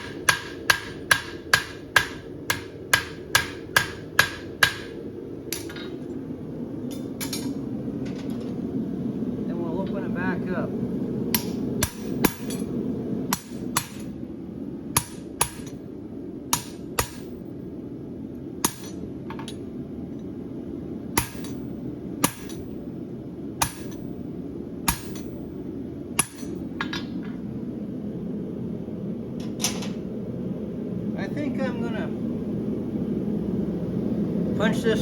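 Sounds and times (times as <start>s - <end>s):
gas forge rushing: 0.0s - 9.6s
hammer ringing on anvil: 22.2s - 22.6s, 23.6s - 24.0s.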